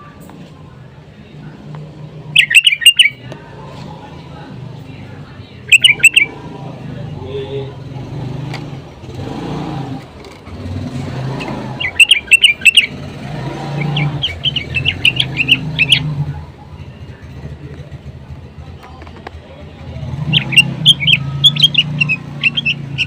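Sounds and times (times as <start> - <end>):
bird calling in bright choppy notes: 2.3 - 3.2, 5.7 - 6.4, 11.4 - 16.1, 20.2 - 23.0.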